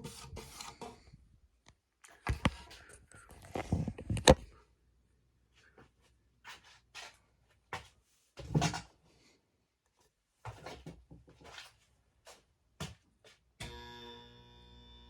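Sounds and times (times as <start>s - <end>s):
objects being handled: 2.1s - 4.5s.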